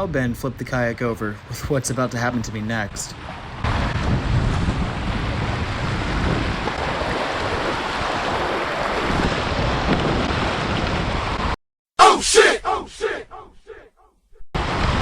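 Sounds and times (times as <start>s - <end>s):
wind buffeting microphone: 0.0s - 11.6s
river rapids rushing: 6.7s - 9.3s.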